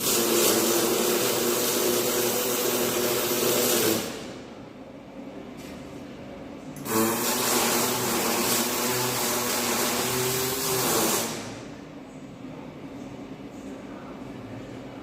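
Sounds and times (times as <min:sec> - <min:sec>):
welding arc hissing: 0:00.0 - 0:04.4, 0:06.8 - 0:11.6
steady hum: 0:00.0 - 0:15.0.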